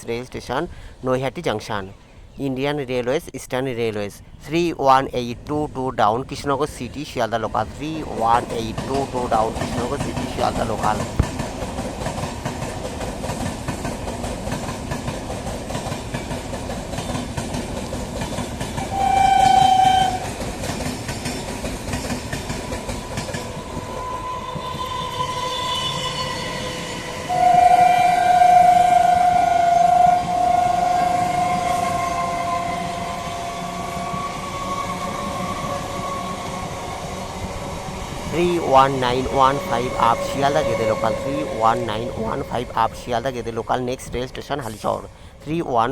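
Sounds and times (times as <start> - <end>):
train wheels clattering on rails: 7.0 - 45.5
train horn blast: 18.8 - 20.4, 23.7 - 44.0.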